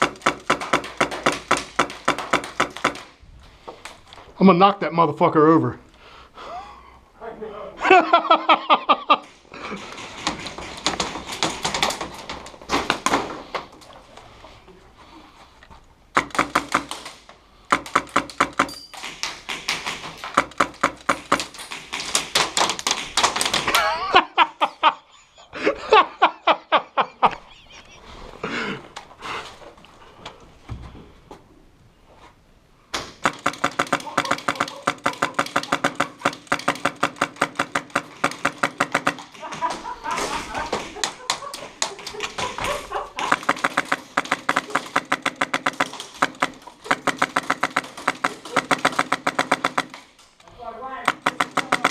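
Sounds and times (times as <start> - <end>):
airsoft guns firing: 0.0 - 3.2, 9.7 - 13.5, 16.1 - 24.0, 32.9 - 50.2, 51.0 - 51.9.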